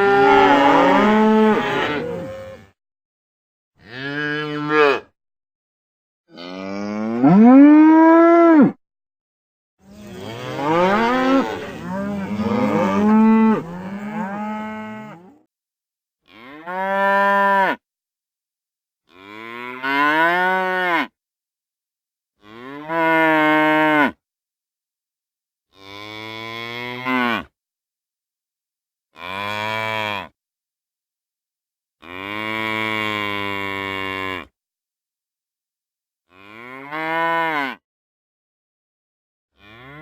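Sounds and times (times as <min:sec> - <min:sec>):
cows mooing: 0:00.0 - 0:02.7, 0:06.3 - 0:08.7, 0:09.9 - 0:15.4.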